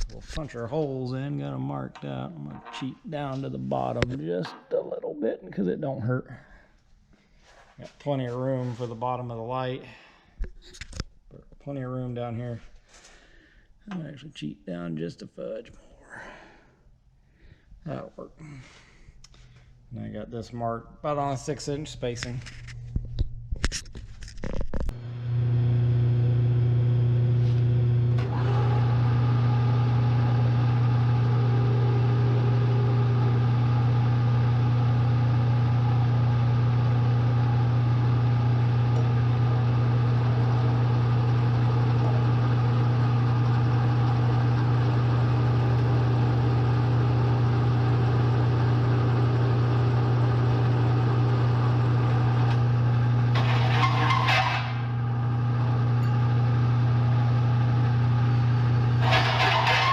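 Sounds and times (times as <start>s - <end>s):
milling machine motor humming: 25.0s - 59.9s.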